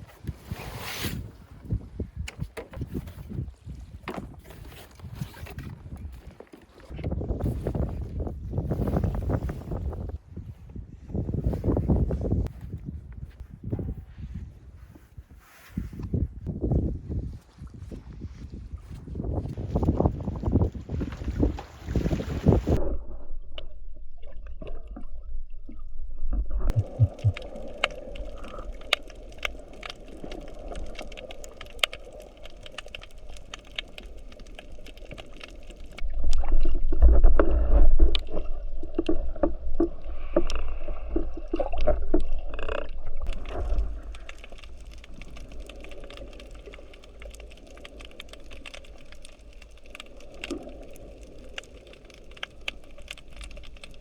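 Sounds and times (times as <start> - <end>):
water sloshing and gurgling: 17.2 - 54.0
low rumble: 22.6 - 54.0.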